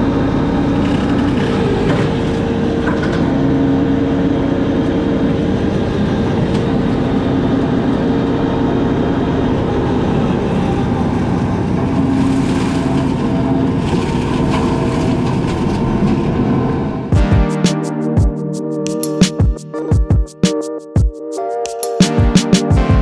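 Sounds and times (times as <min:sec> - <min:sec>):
heavy diesel machine running: 0:00.0 - 0:17.1.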